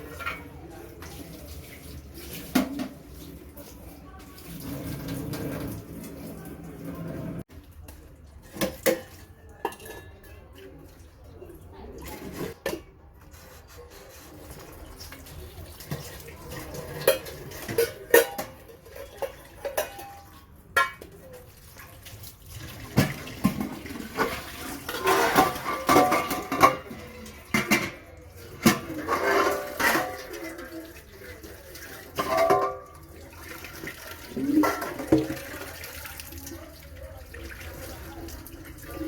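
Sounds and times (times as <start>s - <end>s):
dishes and cutlery clattering: 0.0s - 3.3s, 8.5s - 10.8s, 14.3s - 21.5s, 22.6s - 35.7s
running water: 21.2s - 39.0s.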